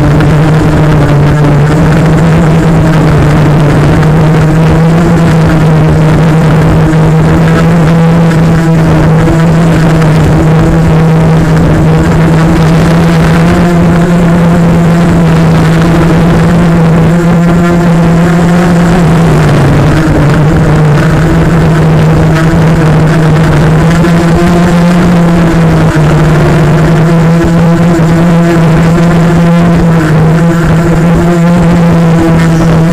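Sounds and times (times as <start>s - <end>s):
low rumble: 0.0s - 32.9s
quadcopter propellers buzzing: 0.0s - 32.9s.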